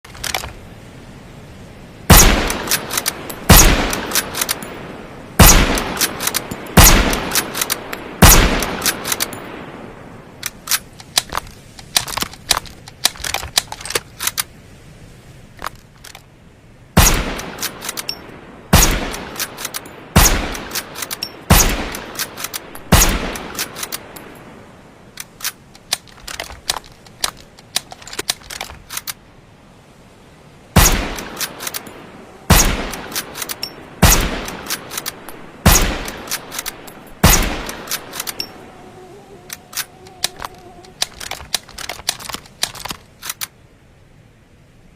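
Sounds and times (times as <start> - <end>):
suppressed rifle shots: 2.1 - 4.6, 5.4 - 9.3, 17.0 - 18.0, 18.7 - 23.9, 30.8 - 31.9, 32.5 - 38.4
metallic clicks and clacks: 2.5 - 4.8, 5.8 - 8.0, 10.4 - 14.5, 19.1 - 19.9, 20.5 - 24.3, 25.2 - 29.2, 31.1 - 32.0, 32.9 - 38.5, 39.5 - 43.5.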